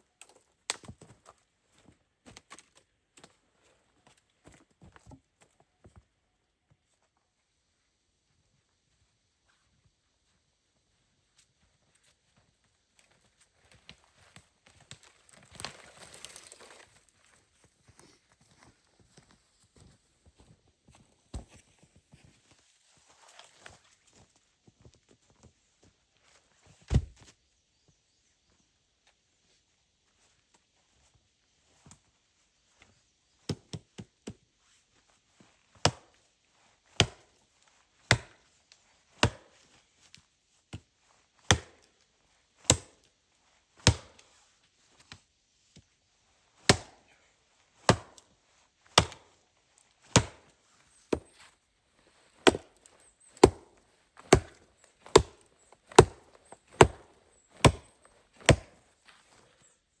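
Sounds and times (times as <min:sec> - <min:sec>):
wood being chopped: 0:26.9 - 0:27.2, 0:37.0 - 0:37.2, 0:38.1 - 0:38.4, 0:39.2 - 0:39.5, 0:41.5 - 0:41.9, 0:42.7 - 0:42.9, 0:43.8 - 0:44.2, 0:46.7 - 0:47.0, 0:47.9 - 0:48.2, 0:49.0 - 0:49.4, 0:50.1 - 0:50.5, 0:51.1 - 0:51.4, 0:52.4 - 0:58.8.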